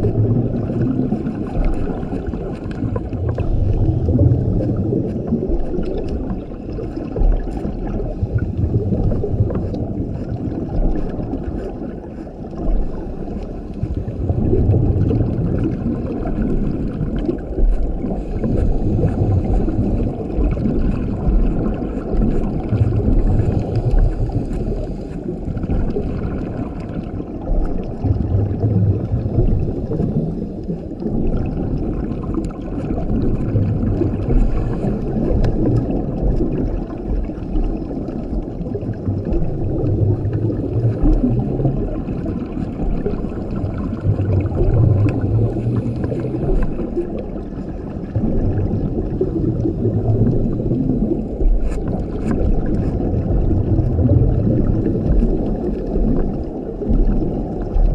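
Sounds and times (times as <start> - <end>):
exhaled bubbles rumbling: 0.0 - 57.9
regulator breathing underwater: 18.0 - 20.3, 21.1 - 25.9, 45.0 - 47.0.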